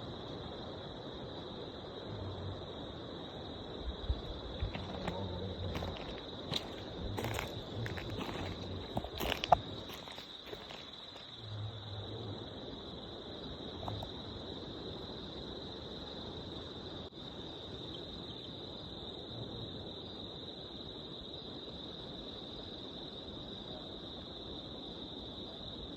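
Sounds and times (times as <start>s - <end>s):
faint low hum: 0.0s - 18.5s
night insects droning: 0.0s - 25.9s.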